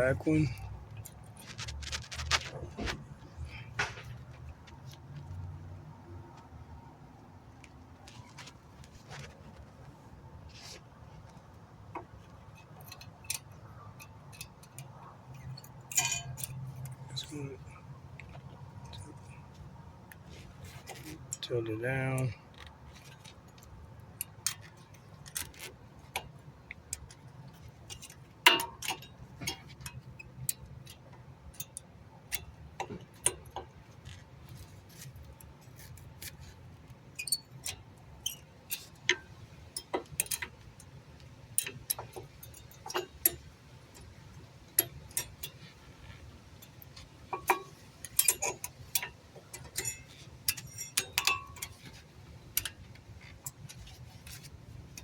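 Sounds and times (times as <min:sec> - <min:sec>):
metal clicks and taps: 0:22.5 - 0:55.0.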